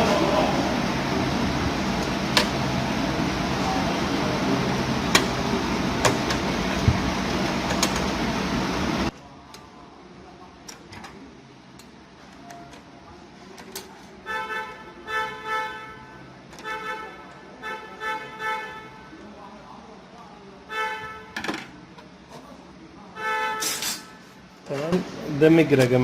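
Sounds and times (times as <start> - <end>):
loud steady rushing noise: 0.0 - 9.1
car horn toots: 14.2 - 19.2, 20.7 - 21.4, 23.2 - 24.3.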